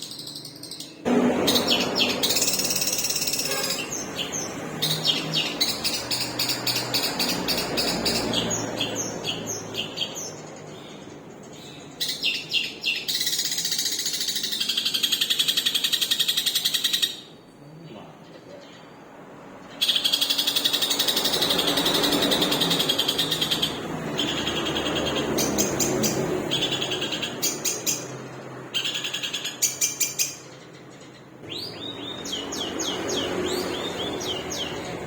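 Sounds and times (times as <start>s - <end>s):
shrike singing chattering trills: 0.0s - 19.0s.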